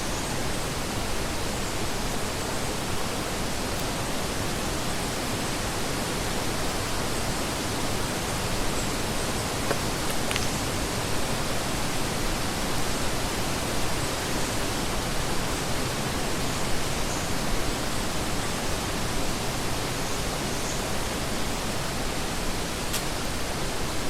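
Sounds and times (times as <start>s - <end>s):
steady rushing hiss: 0.0s - 24.0s
faint click: 22.9s - 23.2s.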